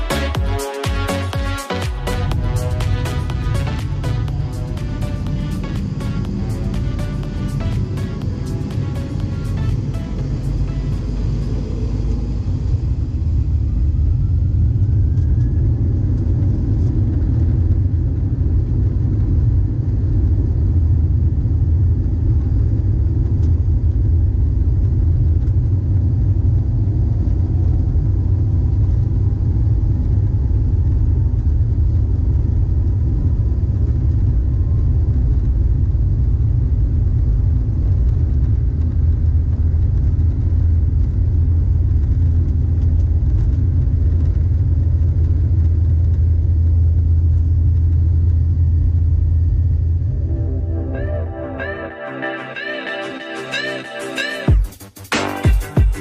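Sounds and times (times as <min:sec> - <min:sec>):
airplane cabin engine rumble: 0:00.0 - 0:54.3.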